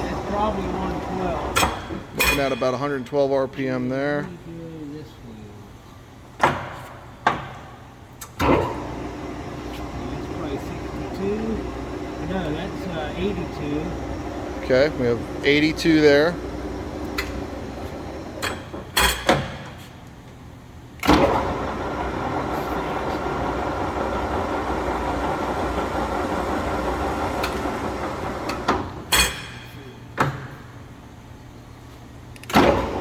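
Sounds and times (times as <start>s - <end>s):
lathe spindle running: 0.0s - 2.1s, 8.7s - 18.8s, 21.1s - 29.0s.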